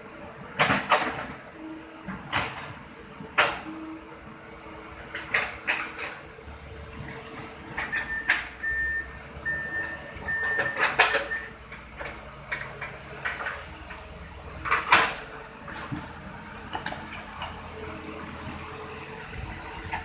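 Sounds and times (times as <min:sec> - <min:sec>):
toy truck electronic beeping: 0:07.9 - 0:11.6.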